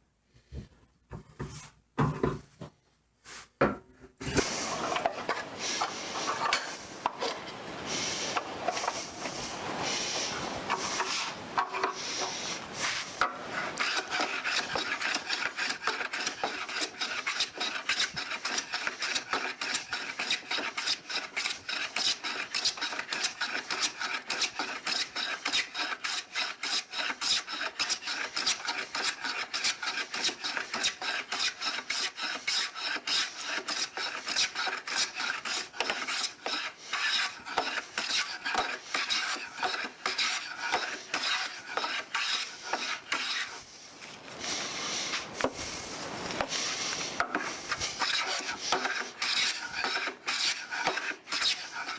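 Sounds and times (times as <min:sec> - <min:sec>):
hand plane shaving wood: 0:04.2 - 0:51.9.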